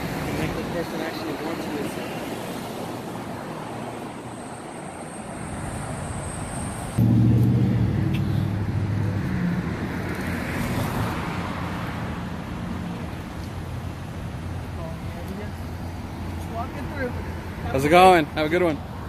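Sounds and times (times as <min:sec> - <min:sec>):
vehicles passing on street: 0:00.0 - 0:19.0
engine drone: 0:07.0 - 0:10.9.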